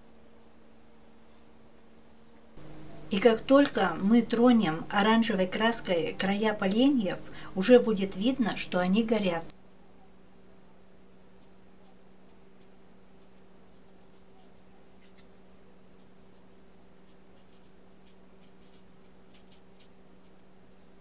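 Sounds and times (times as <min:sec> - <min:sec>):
low electrical hum: 0:00.0 - 0:21.0
paintbrush scratching on paper: 0:11.3 - 0:21.0.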